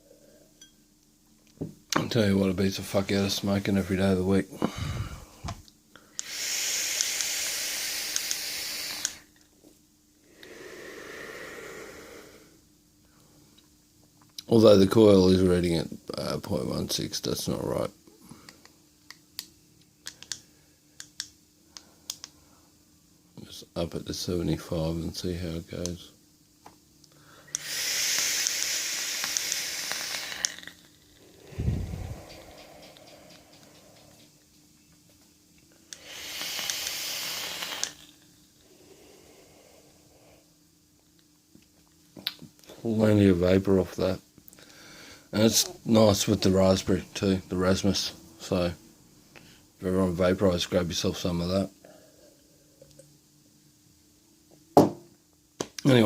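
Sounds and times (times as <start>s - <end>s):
breathy exhale: 4.5s - 9.2s, 10.2s - 12.6s, 31.2s - 34.2s, 38.6s - 40.5s, 44.6s - 45.3s
low puff of breath: 4.6s - 5.6s, 31.3s - 34.2s
vape atomizer hissing and crackling: 6.2s - 9.4s, 27.4s - 34.4s, 35.8s - 40.2s.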